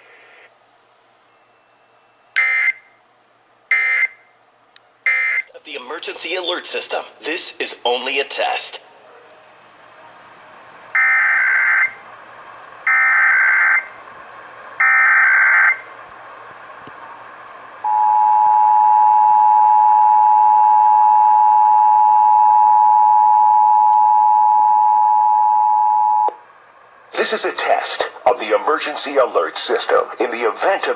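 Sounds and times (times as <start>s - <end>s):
two-tone alarm: 1.4s - 3.0s, 3.7s - 4.3s, 5.1s - 5.5s, 11.0s - 12.0s, 12.9s - 14.0s, 14.8s - 15.9s, 17.8s - 26.4s.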